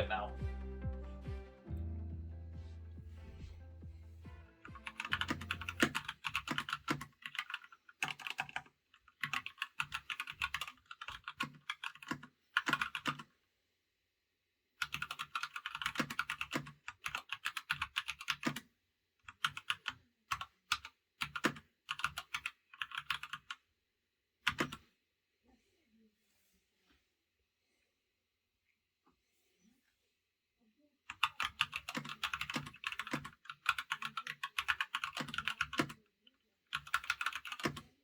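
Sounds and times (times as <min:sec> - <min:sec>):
mechanical keyboard typing: 0:04.8 - 0:13.3, 0:14.8 - 0:18.6, 0:19.3 - 0:23.6, 0:24.5 - 0:24.8, 0:31.1 - 0:36.0, 0:36.7 - 0:38.0.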